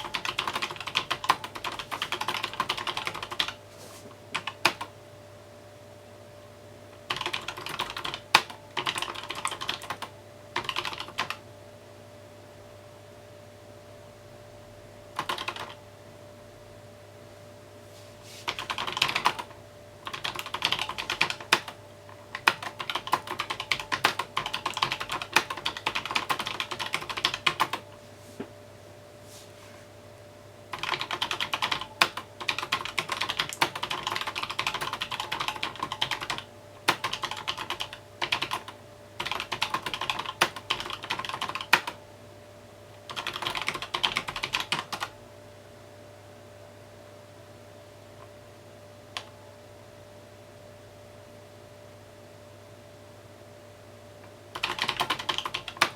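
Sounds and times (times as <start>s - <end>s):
mechanical keyboard typing: 0.0s - 3.6s, 4.3s - 4.9s, 7.0s - 11.4s, 15.2s - 15.8s, 18.5s - 27.8s, 30.7s - 42.0s, 43.1s - 45.1s, 54.5s - 55.9s.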